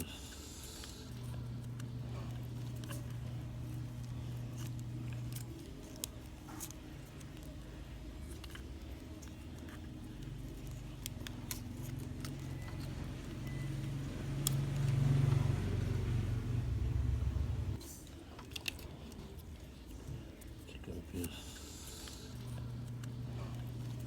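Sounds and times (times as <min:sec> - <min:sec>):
motorcycle engine running: 0:11.3 - 0:17.8.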